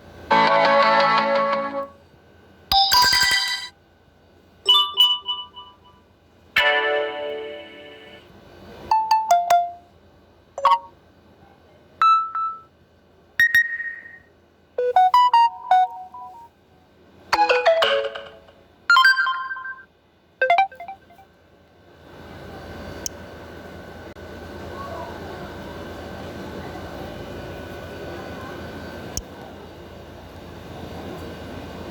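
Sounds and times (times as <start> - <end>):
electronic notification chimes: 10.6 - 10.9, 14.8 - 16.5, 20.4 - 21.2.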